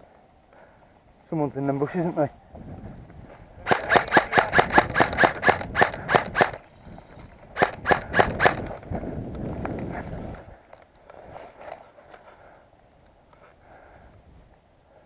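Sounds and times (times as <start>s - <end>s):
airsoft gun firing sharp shots: 3.7s - 6.7s, 7.6s - 8.7s.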